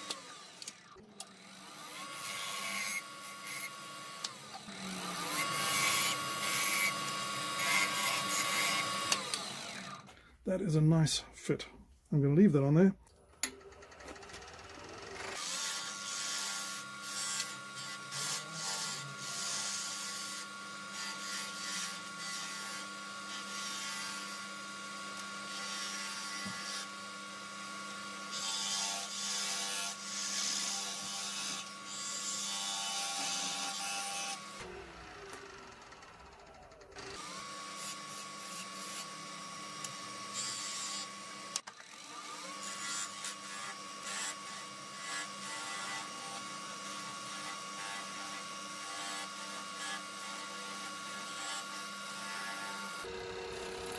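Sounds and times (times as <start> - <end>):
wood lathe motor whine: 0.0 - 10.2, 13.4 - 53.9.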